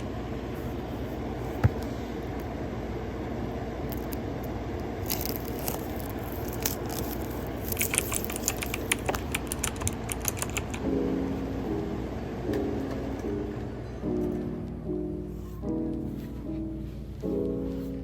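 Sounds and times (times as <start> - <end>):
paper and plastic tearing: 5.0 - 9.7.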